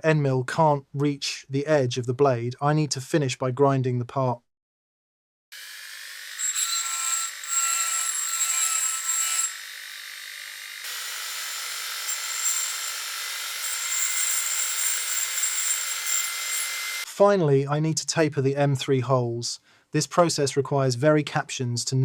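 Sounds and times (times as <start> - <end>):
grinding tool on metal: 5.6 - 17.1.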